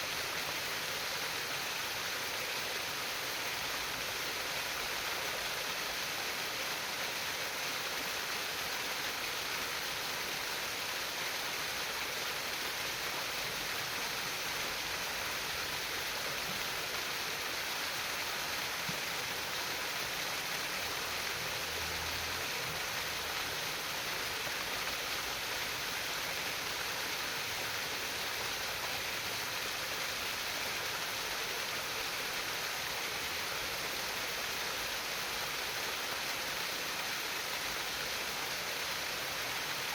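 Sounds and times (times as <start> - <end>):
stream trickling and babbling: 0.0 - 39.9.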